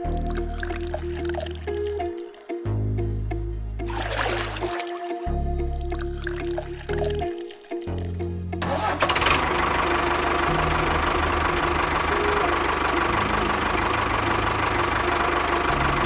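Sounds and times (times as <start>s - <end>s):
background music: 0.0s - 13.8s
small engine running: 8.6s - 16.0s.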